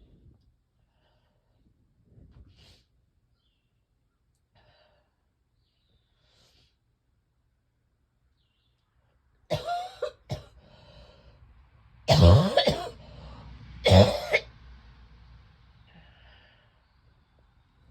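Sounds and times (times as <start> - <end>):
person coughing hard: 9.5 - 10.6, 12.1 - 13.0, 13.8 - 14.5
person breathing: 10.5 - 11.4, 12.9 - 13.6, 15.8 - 17.0.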